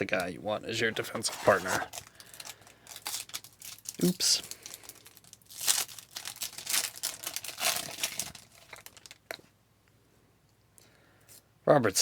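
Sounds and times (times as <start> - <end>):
wrapper crinkling as torn open: 1.0 - 9.4.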